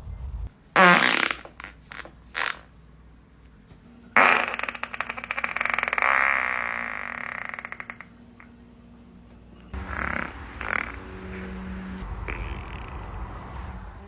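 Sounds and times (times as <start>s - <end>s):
person farting: 0.8s - 2.7s, 4.2s - 8.5s, 9.8s - 13.3s.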